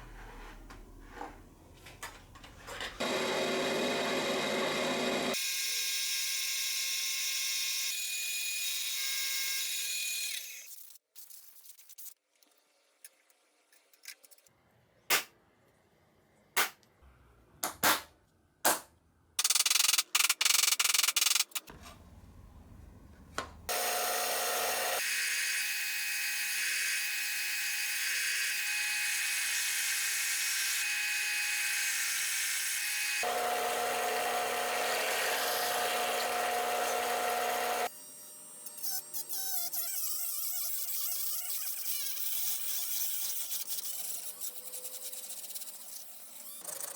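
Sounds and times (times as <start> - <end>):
power tool whining: 3.0 - 5.4, 23.7 - 25.7, 33.0 - 37.9.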